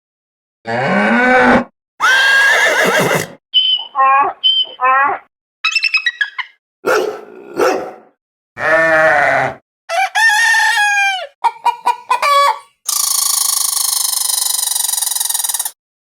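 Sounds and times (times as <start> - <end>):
hen clucking: 9.9 - 12.8.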